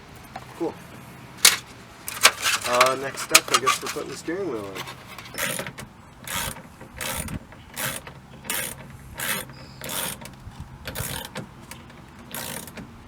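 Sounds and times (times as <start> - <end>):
ratchet wrench ratcheting: 4.8 - 11.4, 12.3 - 12.8.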